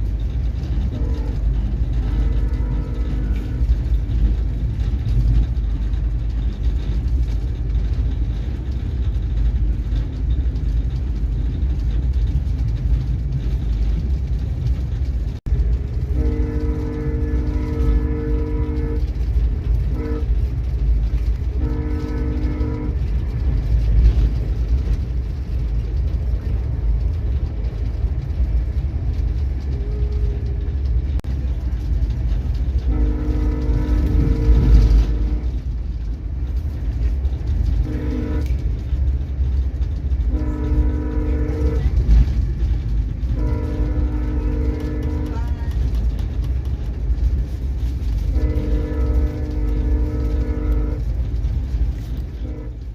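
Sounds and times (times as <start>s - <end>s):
steady low rumble: 0.0s - 52.9s
locomotive air horn blasts: 0.8s - 3.7s, 15.9s - 20.5s, 21.4s - 23.1s, 32.8s - 35.6s, 37.7s - 38.6s, 40.2s - 42.4s, 43.2s - 45.8s, 48.1s - 51.2s, 52.4s - 52.9s.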